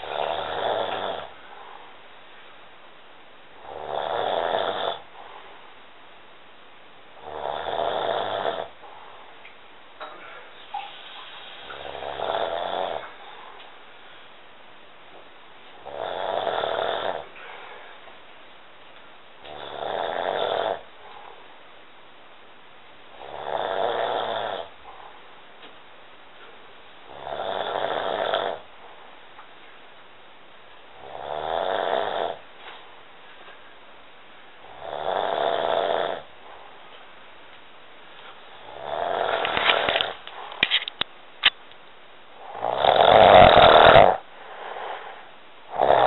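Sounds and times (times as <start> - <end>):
person snoring: 0.0 - 1.4, 3.6 - 5.1, 7.2 - 8.8, 11.1 - 13.2, 15.8 - 17.4, 19.5 - 20.9, 23.2 - 24.7, 27.1 - 28.7, 31.0 - 32.4, 34.7 - 36.3, 38.6 - 40.6, 42.4 - 46.0.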